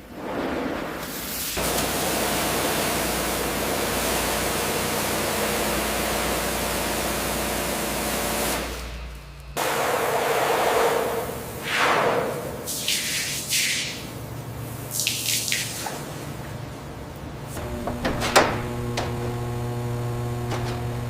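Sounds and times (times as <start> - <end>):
low hum: 17.6 - 21.0.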